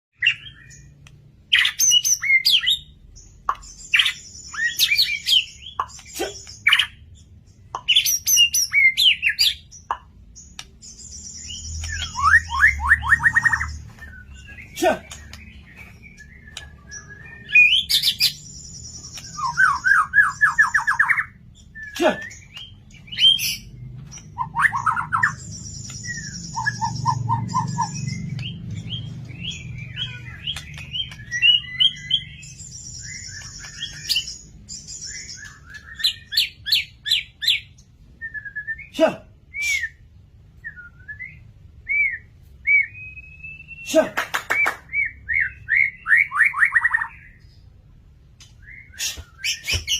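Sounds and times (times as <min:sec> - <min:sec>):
songbird whistling and trilling: 0:00.2 - 0:43.9, 0:44.5 - 0:47.6, 0:48.4 - 0:49.9.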